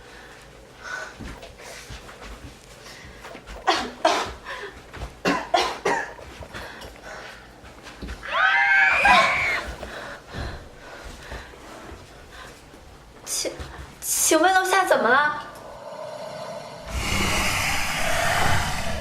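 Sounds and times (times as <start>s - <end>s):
people coughing: 3.6s - 4.5s, 5.2s - 6.5s
drawn-out vocal cry: 8.2s - 9.7s.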